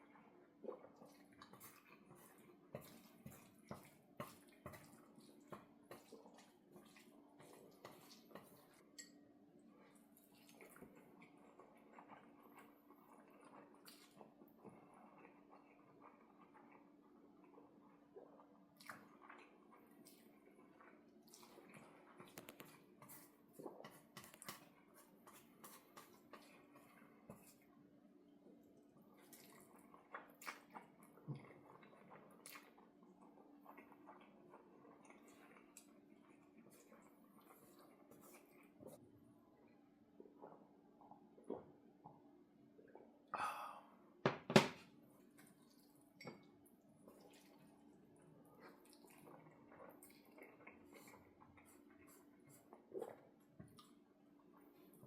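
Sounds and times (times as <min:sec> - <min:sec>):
faint steady hum: 0:00.0 - 0:55.0
wet chewing and mouth smacking: 0:18.2 - 0:27.8, 0:28.8 - 0:39.0, 0:45.3 - 0:55.0.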